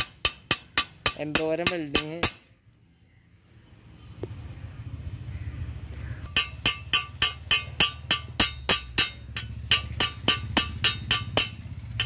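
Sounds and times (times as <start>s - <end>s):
metal tool tapping steel weld: 0.0s - 2.5s, 6.3s - 12.0s.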